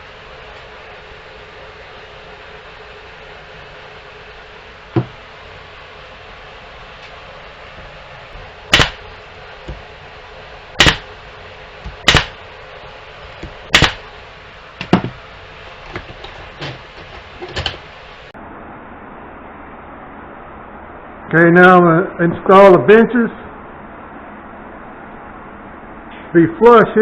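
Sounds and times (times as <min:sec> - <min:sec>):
wood knocking: 0:04.9 - 0:05.2, 0:09.7 - 0:09.9, 0:13.3 - 0:14.0, 0:14.8 - 0:15.2, 0:15.8 - 0:17.8
nail gun shots: 0:08.7 - 0:09.0, 0:10.8 - 0:11.1, 0:11.9 - 0:12.4, 0:13.7 - 0:14.0.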